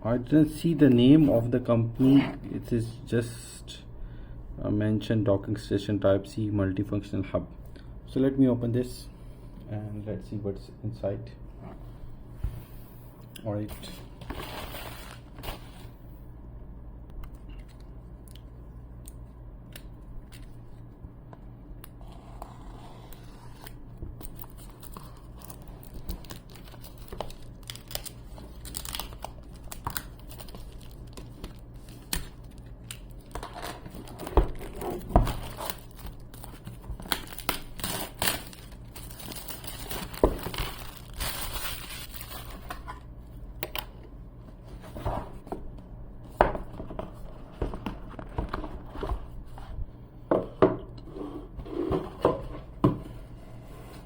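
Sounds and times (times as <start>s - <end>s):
steady low hum: 0.0s - 54.0s
packaging crinkling and tearing: 23.1s - 43.0s.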